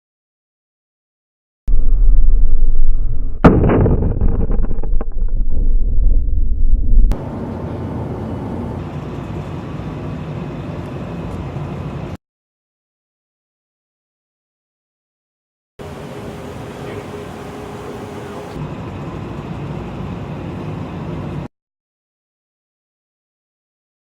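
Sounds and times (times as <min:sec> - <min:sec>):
sharp bang: 0:01.7 - 0:06.3
heavy low rumble: 0:01.7 - 0:08.8.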